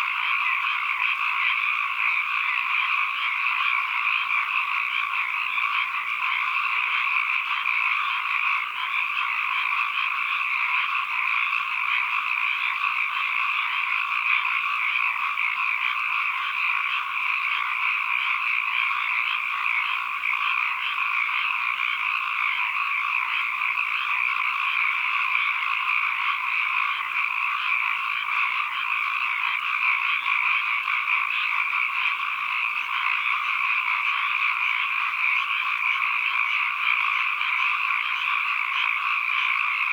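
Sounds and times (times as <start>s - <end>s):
chorus of frogs calling: 0.0s - 39.9s.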